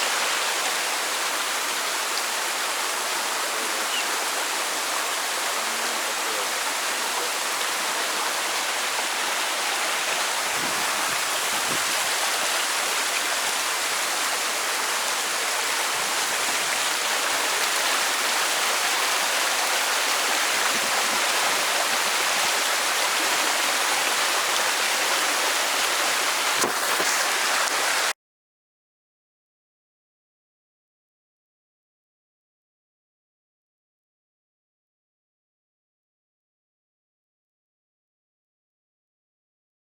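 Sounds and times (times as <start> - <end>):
waterfall rushing: 0.0 - 28.1.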